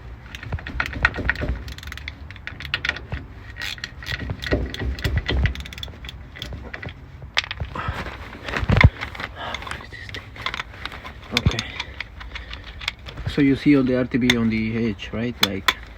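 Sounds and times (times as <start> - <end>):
metallic clatter: 0.0 - 15.9
socket ratchet clicking: 0.3 - 7.6.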